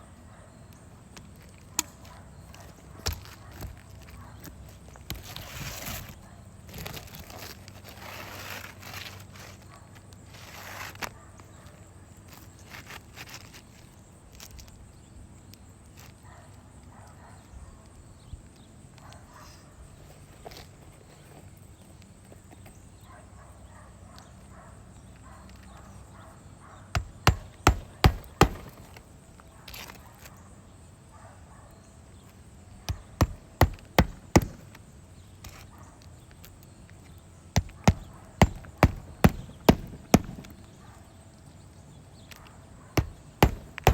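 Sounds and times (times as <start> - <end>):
hammer blows: 43.0 - 43.9.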